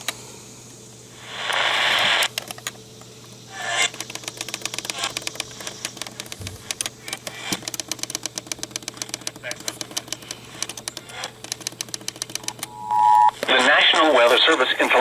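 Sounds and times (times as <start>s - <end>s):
radio static hiss: 1.0s - 7.7s, 9.4s - 9.8s, 12.3s - 15.0s
rapid irregular clicks: 1.5s - 12.7s.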